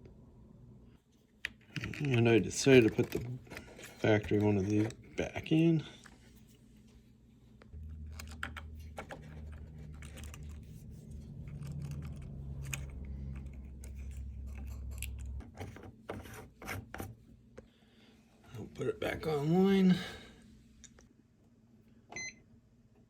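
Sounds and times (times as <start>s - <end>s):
steady low hum: 0.0s - 21.4s
plastic parts clicking and scraping: 1.4s - 5.4s, 7.8s - 17.1s.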